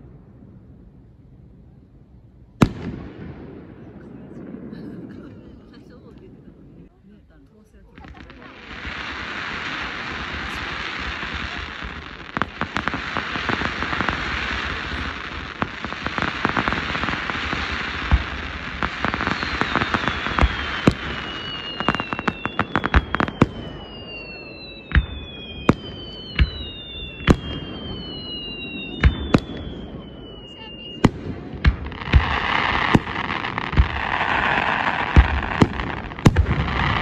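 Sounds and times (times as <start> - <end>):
firework bangs: 2.6 - 6.9, 7.9 - 37.0
fireworks crackling and popping: 2.6 - 37.0
whistling firework shells: 8.8 - 37.0.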